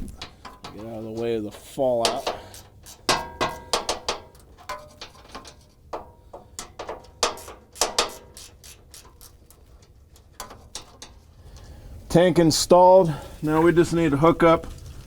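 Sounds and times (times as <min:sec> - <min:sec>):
ratchet wrench clicking: 0:06.6 - 0:09.4.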